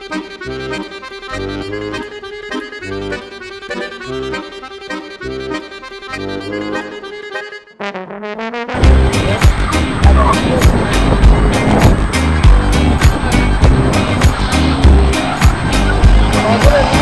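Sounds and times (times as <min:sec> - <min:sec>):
melodic tune: 0:00.0 - 0:17.0
steady bass beat: 0:08.8 - 0:17.0.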